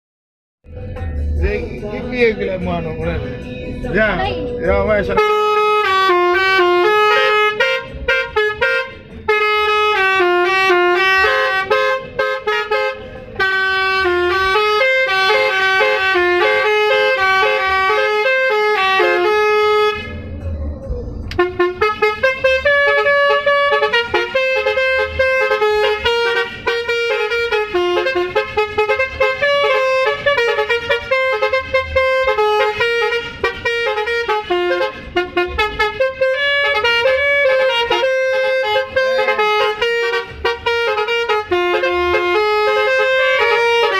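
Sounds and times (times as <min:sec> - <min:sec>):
multi-tone air horn melody: 0:04.2 - 0:20.2, 0:21.3 - 0:43.9
low rumble: 0:19.7 - 0:21.8.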